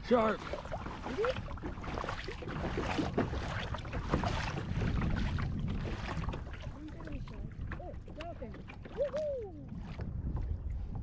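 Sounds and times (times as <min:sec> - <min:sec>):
water splashing around kayak: 0:00.0 - 0:11.0
wind buffeting microphone: 0:00.0 - 0:11.0.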